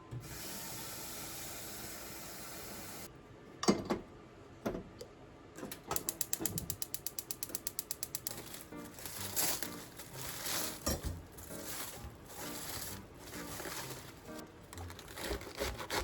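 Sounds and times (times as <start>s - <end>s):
rapid mechanical clicks: 5.7s - 8.5s
rustling: 8.2s - 16.0s.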